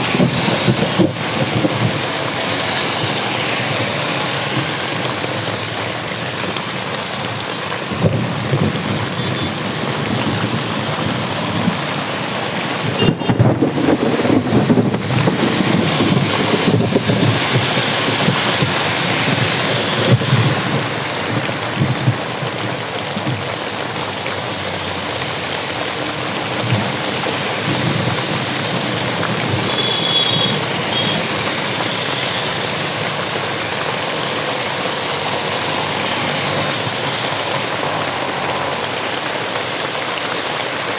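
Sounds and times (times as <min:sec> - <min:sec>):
heavy rain pouring: 0:00.0 - 0:40.9
road traffic: 0:00.0 - 0:40.9
rolling thunder: 0:12.8 - 0:22.6.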